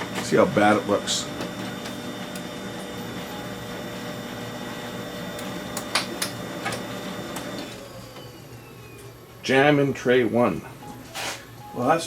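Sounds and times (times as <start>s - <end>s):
printer motor hum: 0.0s - 9.4s.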